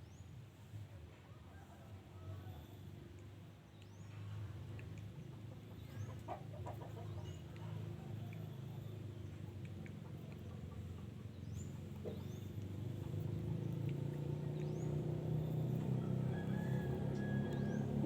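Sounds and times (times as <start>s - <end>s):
small birds chirping: 2.6s - 18.0s
vehicle engine running: 7.1s - 18.0s.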